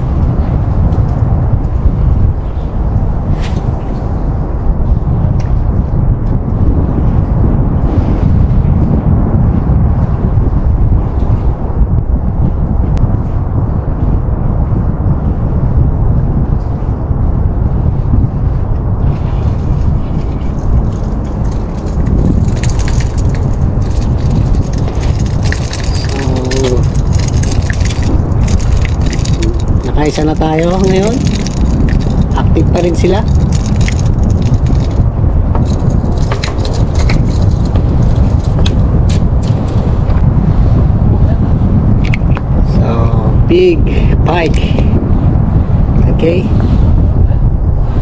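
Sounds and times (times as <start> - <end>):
wind buffeting microphone: 0.0 - 48.0
sharp crackling ticks: 20.9 - 35.0.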